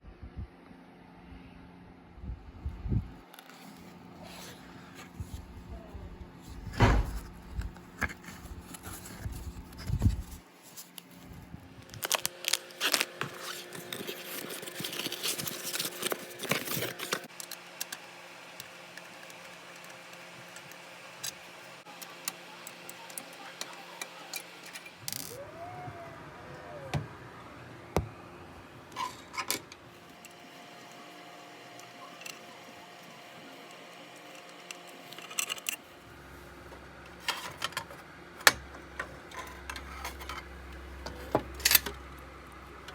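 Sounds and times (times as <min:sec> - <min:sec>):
heavy thumps: 0:06.7 - 0:07.5
small hard parts clicking and rattling: 0:11.8 - 0:25.4, 0:34.2 - 0:35.8.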